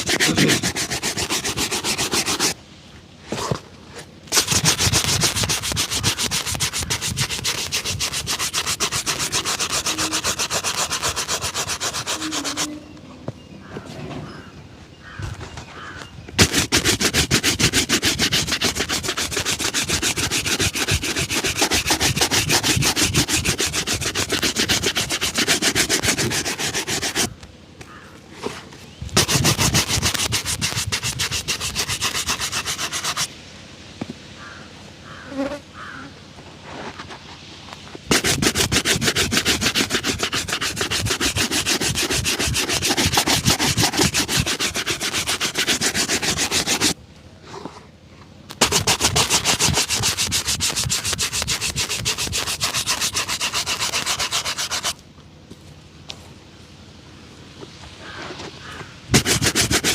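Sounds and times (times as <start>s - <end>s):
rubbing strokes on shoe leather: 0.0s - 2.6s, 4.3s - 12.8s, 16.4s - 27.4s, 29.2s - 33.3s, 38.1s - 47.0s, 48.5s - 55.0s, 59.1s - 59.9s.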